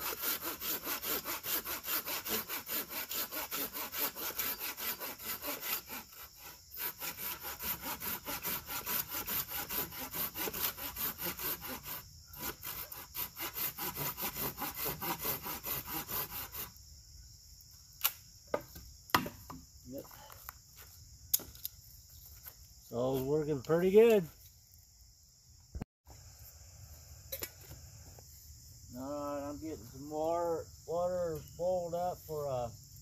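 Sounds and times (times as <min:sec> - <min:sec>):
hand saw cutting wood: 0:00.0 - 0:16.7
sharp knocks: 0:18.5 - 0:19.6.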